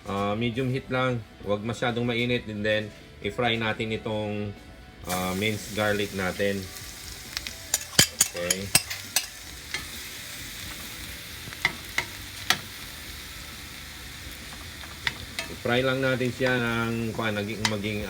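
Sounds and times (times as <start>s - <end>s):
garlic sizzling in oil: 5.1s - 18.0s
oil popping: 7.2s - 10.0s, 13.6s - 18.0s.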